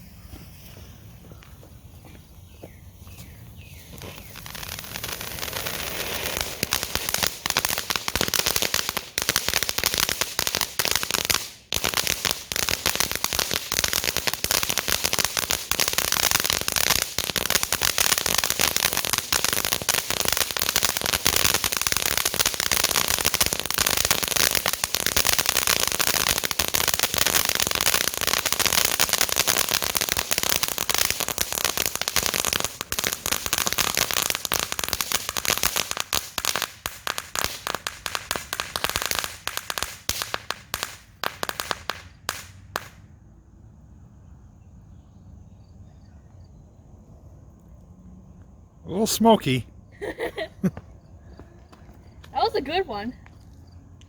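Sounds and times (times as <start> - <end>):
firework fountain crackling hiss: 3.6 - 43.0, 48.9 - 50.7.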